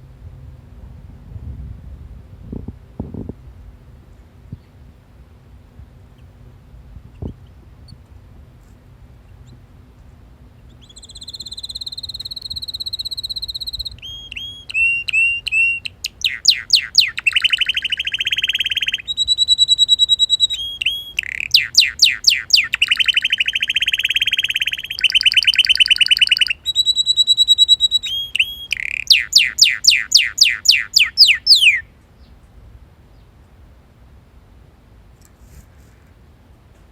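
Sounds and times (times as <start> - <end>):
canary singing: 10.6 - 32.3.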